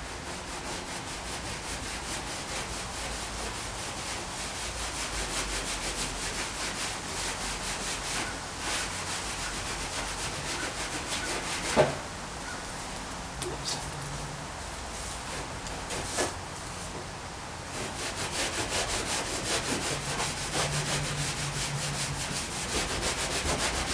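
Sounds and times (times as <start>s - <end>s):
sandpaper rubbing on metal: 17.8s - 23.9s.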